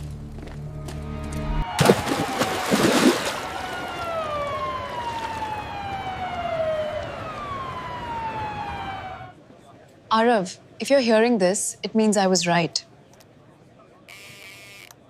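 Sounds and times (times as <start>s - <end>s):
siren wailing: 1.1s - 9.4s.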